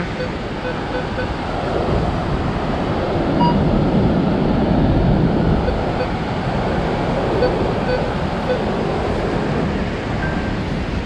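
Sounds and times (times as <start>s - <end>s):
ocean surf: 0.0s - 11.0s
wind on microphone: 0.0s - 11.0s.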